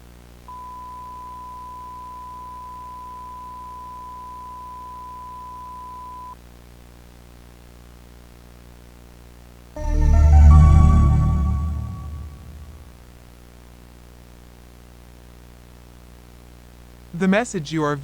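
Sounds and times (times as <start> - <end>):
electronic test tone beep: 0.6 - 6.3.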